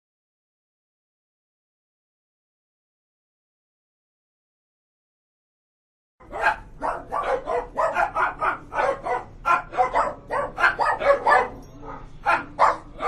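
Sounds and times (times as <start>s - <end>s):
dog barking rapidly: 6.2s - 13.0s.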